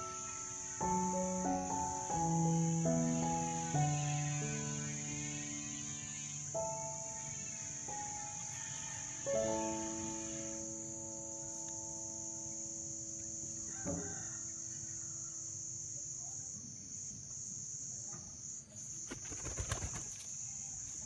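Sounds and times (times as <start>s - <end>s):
held musical note: 0.0s - 14.1s
crickets chirping: 0.0s - 21.0s.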